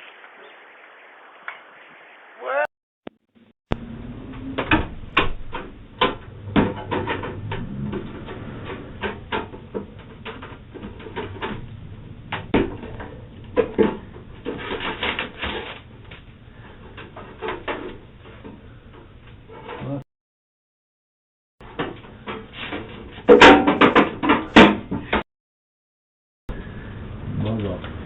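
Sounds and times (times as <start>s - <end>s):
irregular knocks and rattles: 4.4s - 19.8s.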